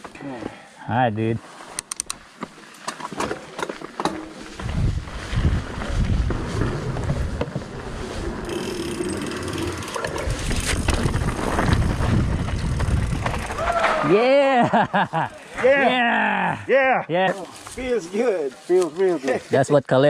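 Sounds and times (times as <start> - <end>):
bike clicks and rattles: 1.7 - 14.0
tyres rumbling over rock: 4.6 - 14.1.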